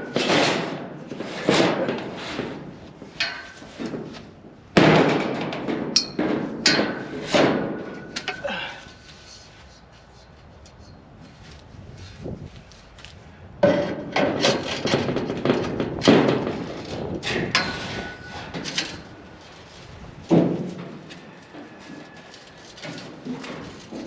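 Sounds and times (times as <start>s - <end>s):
knocking and clattering of parts: 0.0s - 8.8s, 13.6s - 24.0s.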